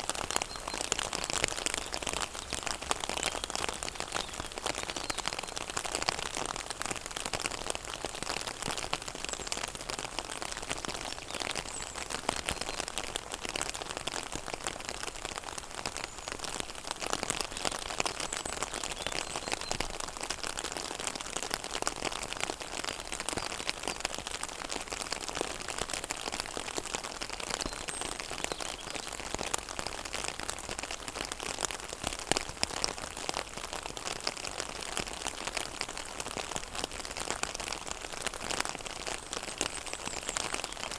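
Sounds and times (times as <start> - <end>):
rain falling on water: 0.0 - 40.9.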